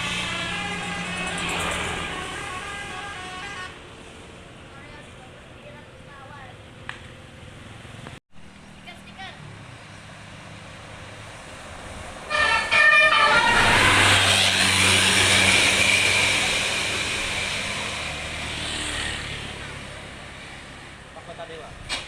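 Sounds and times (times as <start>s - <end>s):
bus horn blasts: 0.0s - 3.9s, 12.3s - 16.2s
bus engine passing: 0.0s - 22.0s.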